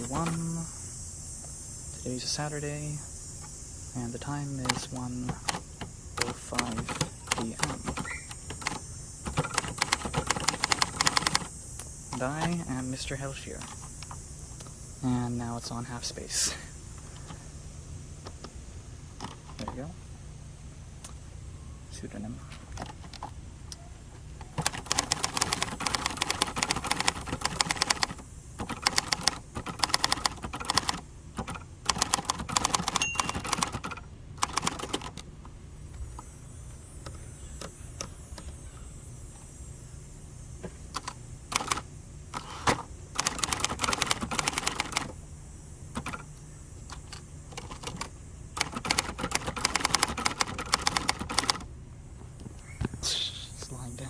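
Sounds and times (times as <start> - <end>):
typewriter keystroke clacks: 0.0 - 0.6, 4.4 - 11.5, 12.1 - 12.9, 24.4 - 35.3, 41.0 - 45.2, 46.0 - 46.3, 46.9 - 51.7.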